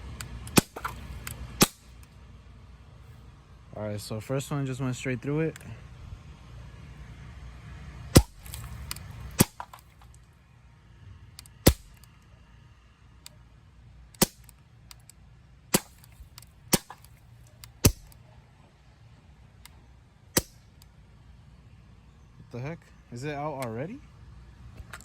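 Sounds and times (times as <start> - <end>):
bb gun firing pops: 11.7 - 12.0, 15.7 - 18.2, 20.4 - 20.7.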